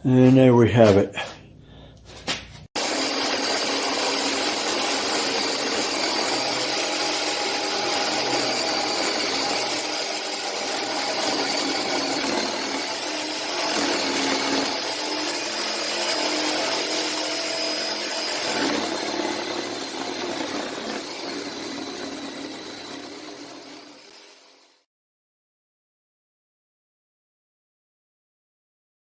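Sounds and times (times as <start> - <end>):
power tool whining: 2.8 - 24.8.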